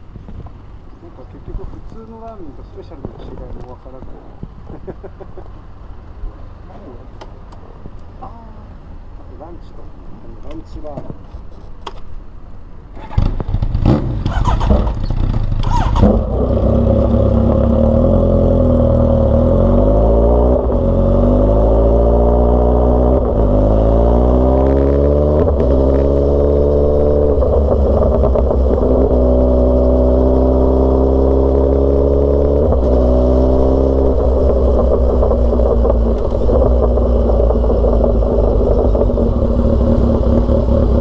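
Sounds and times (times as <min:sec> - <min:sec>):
motorcycle engine accelerating: 0:13.0 - 0:41.0.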